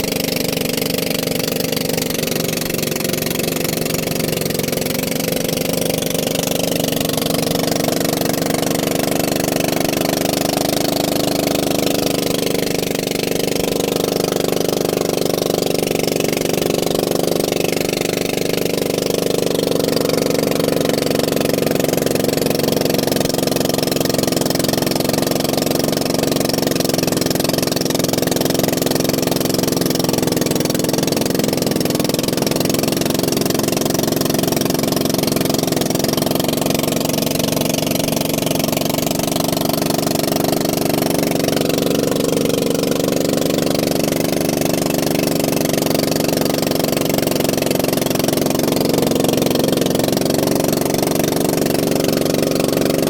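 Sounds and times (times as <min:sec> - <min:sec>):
engine humming steadily: 0:00.0 - 0:53.0.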